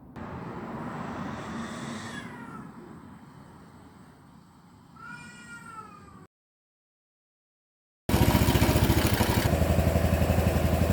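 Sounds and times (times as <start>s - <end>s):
cat meowing: 1.5s - 2.8s, 5.0s - 6.3s
motorcycle engine pulsing: 8.1s - 10.9s.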